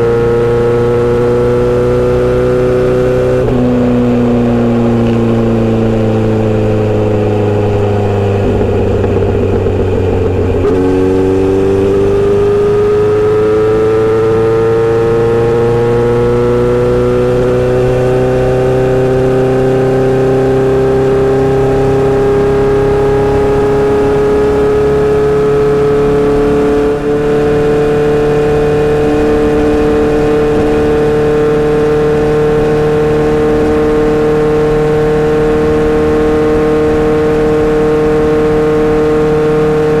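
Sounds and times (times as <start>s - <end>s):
motorcycle engine and exhaust: 0.0s - 40.0s.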